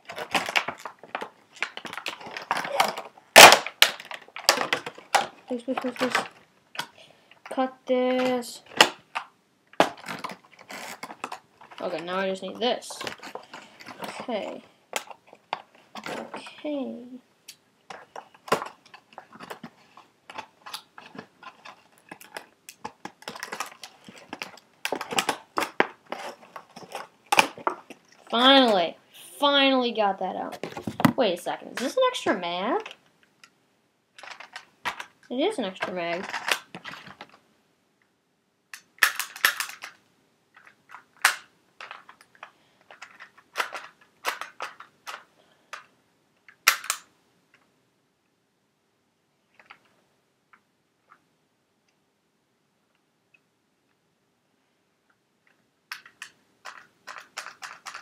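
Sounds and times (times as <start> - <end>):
plastic clicks and rattles: 0.0 - 7.6, 17.9 - 28.8, 34.2 - 37.4, 38.7 - 47.7, 55.1 - 58.0
packaging being torn open: 0.1 - 5.3.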